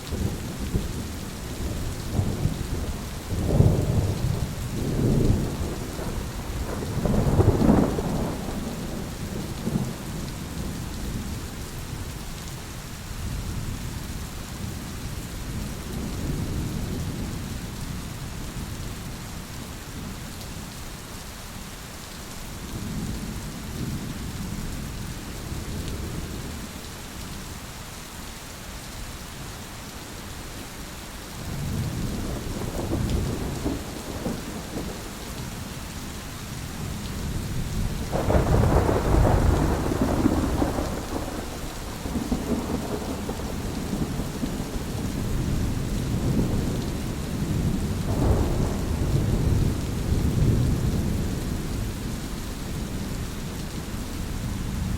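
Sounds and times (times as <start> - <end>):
steady rain: 0.0 - 54.9
rolling thunder: 0.1 - 11.4, 31.5 - 35.7, 36.7 - 52.0
sharp thunderclap: 37.9 - 46.8, 47.4 - 51.2.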